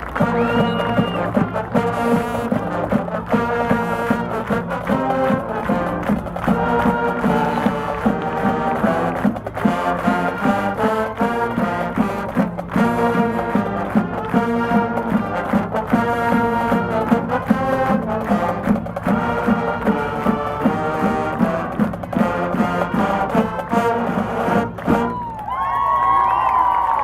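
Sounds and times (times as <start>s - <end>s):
crowd cheering and shouting: 0.0s - 1.4s, 6.5s - 8.0s, 24.9s - 27.0s
marching band brass and drums: 0.0s - 27.0s.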